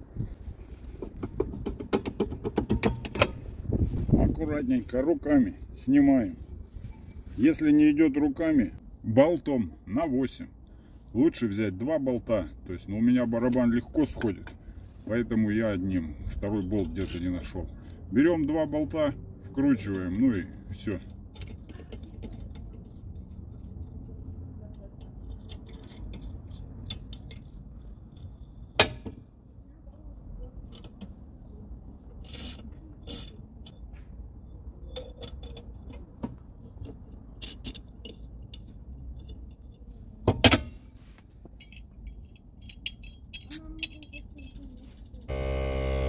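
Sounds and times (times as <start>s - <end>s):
sharp metal knocks: 1.2s - 3.4s
metallic clinks of tools and bolts: 34.8s - 36.0s, 36.8s - 39.8s, 41.6s - 44.8s.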